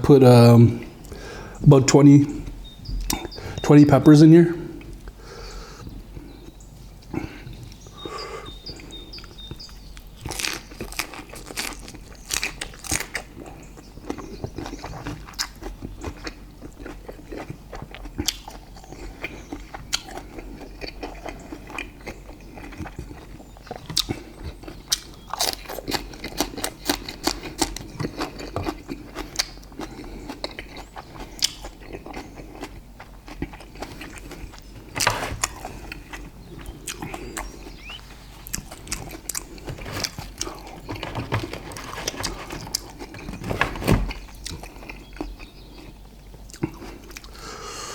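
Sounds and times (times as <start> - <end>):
biting and chewing steak: 8.6 - 47.4.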